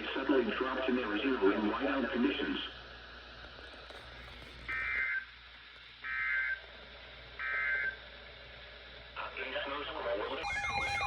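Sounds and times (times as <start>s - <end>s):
digital data tone bursts: 10.4s - 11.0s.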